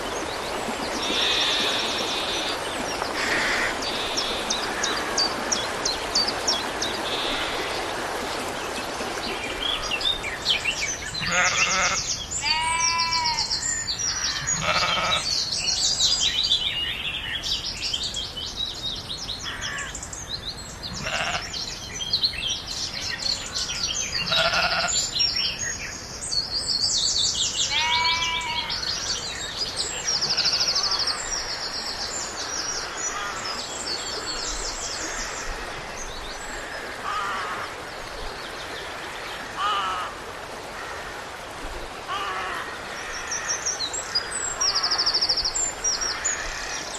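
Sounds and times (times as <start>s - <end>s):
small birds chirping and trilling: 9.6s - 16.8s, 19.4s - 25.5s
sheep bleating: 11.2s - 13.4s, 14.5s - 15.2s, 21.0s - 21.5s, 24.2s - 24.9s, 27.7s - 28.7s.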